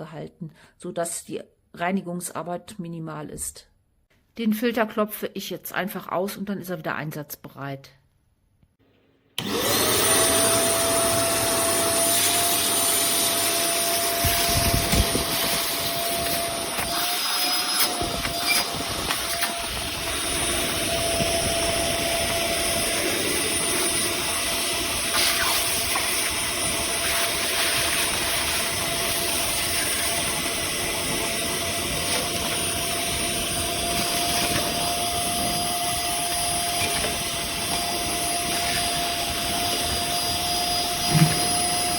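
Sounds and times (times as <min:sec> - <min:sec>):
vacuum cleaner running: 0:09.4 - 0:41.9.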